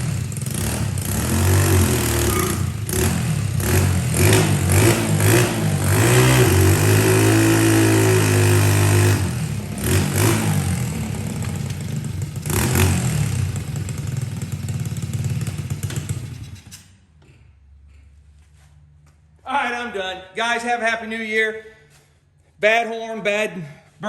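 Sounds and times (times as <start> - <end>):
small engine revving: 0.0 - 16.8.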